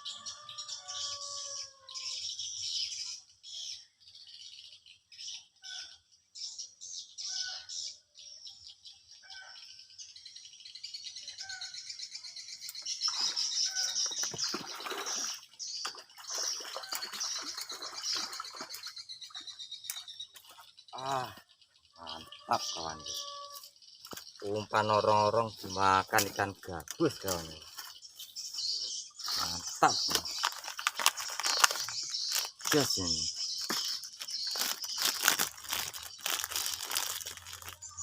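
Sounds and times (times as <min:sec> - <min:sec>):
birds chirping and twittering: 0:00.0 - 0:38.0
irregular crackling noise: 0:29.3 - 0:32.9, 0:33.6 - 0:37.9.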